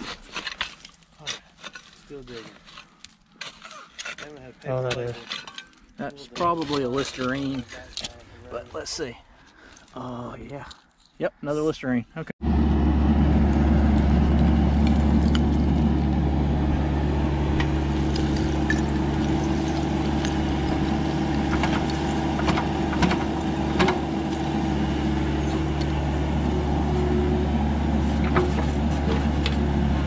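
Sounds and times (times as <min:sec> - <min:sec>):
excavator diesel engine running: 0:12.4 - 0:30.0.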